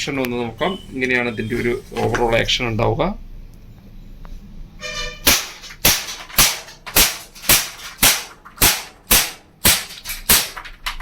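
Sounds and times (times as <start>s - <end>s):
air pistol shots: 5.2s - 10.8s.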